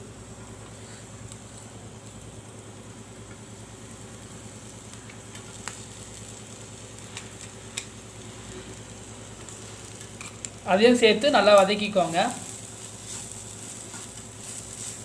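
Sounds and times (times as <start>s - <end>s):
paste sizzling in oil: 3.8s - 15.0s.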